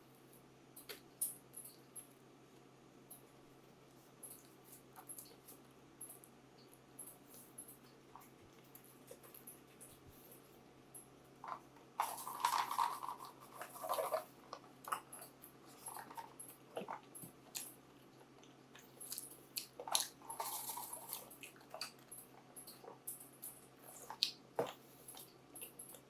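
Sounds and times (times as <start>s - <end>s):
wet mouth clicks and chewing: 14.5s - 23.0s, 23.8s - 26.0s.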